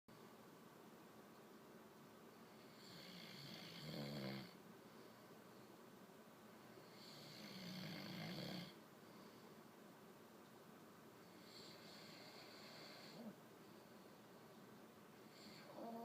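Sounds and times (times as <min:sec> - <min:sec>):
man snoring: 0:02.6 - 0:04.6, 0:06.9 - 0:08.8, 0:11.4 - 0:13.4.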